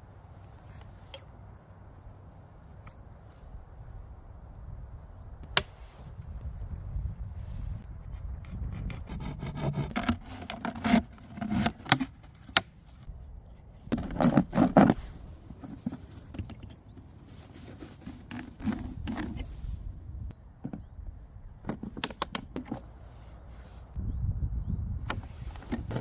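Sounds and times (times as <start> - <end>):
hands scraping and rubbing gear: 8.2 - 19.9.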